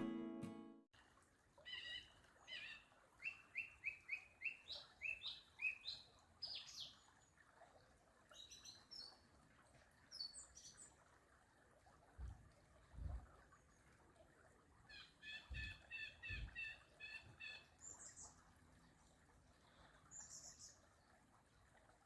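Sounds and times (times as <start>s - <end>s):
songbird chirping: 1.7s - 7.2s.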